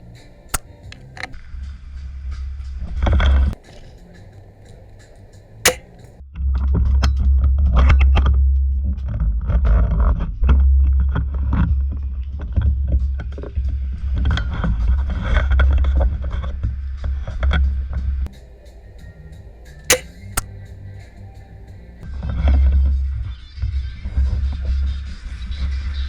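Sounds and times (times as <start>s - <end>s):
sharp snap: 5.7s - 6.1s, 19.9s - 20.5s.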